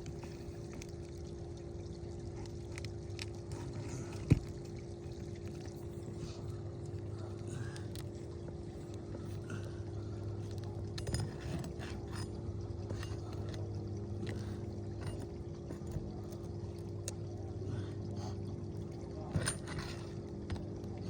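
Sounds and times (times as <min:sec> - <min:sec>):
steady mechanical hum: 0:00.0 - 0:21.0
pry bar clicking and scraping: 0:10.5 - 0:17.2, 0:19.3 - 0:21.0.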